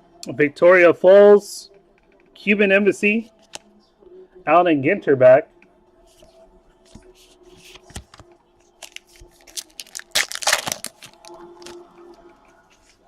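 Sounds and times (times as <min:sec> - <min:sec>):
card pack wrapper crinkling and tearing: 0:08.8 - 0:11.8.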